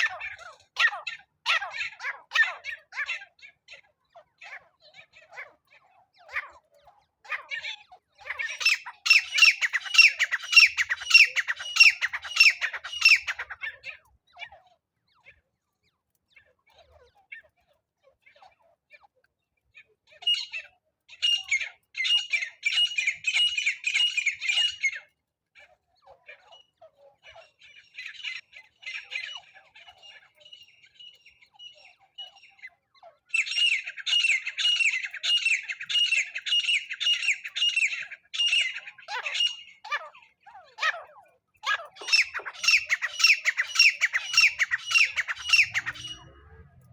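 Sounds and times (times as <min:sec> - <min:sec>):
francolin harsh repeated calls: 0:08.4 - 0:13.6, 0:41.7 - 0:46.9.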